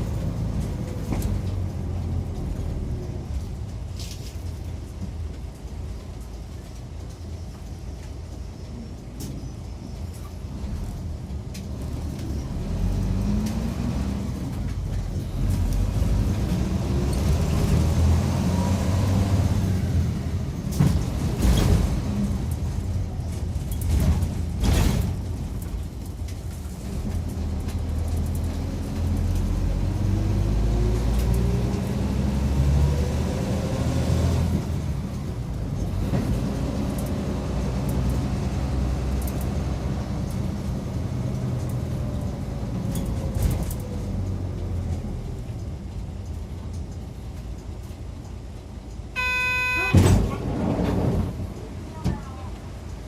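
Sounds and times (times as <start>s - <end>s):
bus engine and road rumble: 0.0s - 53.0s
short electronic chime: 49.2s - 50.0s.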